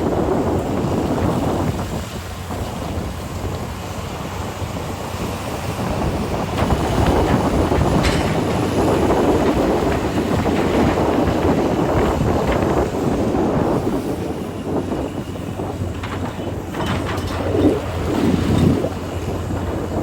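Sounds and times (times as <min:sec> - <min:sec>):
heavy machinery rumble: 0:00.0 - 0:20.0
clattering knocks: 0:06.6 - 0:13.9, 0:15.2 - 0:20.0.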